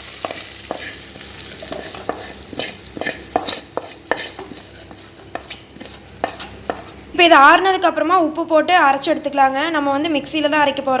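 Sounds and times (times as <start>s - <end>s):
spoon scraping and knocking pan: 0.0s - 7.0s
frying sizzle: 0.0s - 7.2s.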